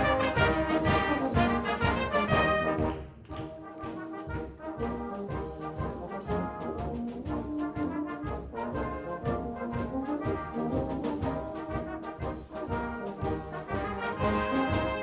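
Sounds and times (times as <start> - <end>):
brass band playing: 0.0 - 15.0.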